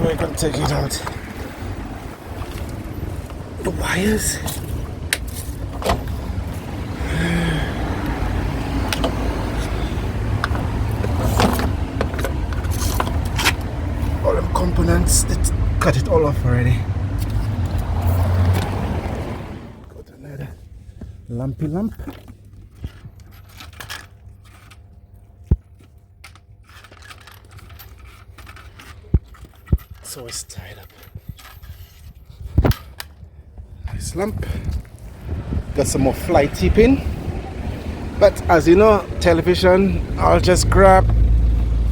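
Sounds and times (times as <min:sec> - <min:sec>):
motor vehicle rumble: 0:00.0 - 0:41.9
scrap rustling and scraping: 0:10.5 - 0:14.2, 0:21.9 - 0:33.0.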